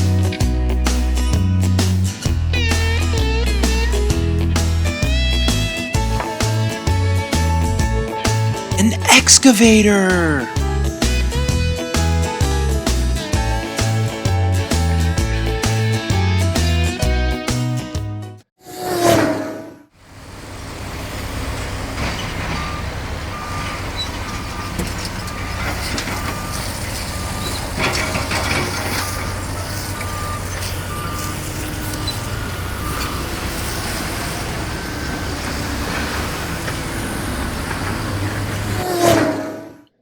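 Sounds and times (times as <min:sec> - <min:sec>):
diesel engine running: 0:20.0 - 0:38.8.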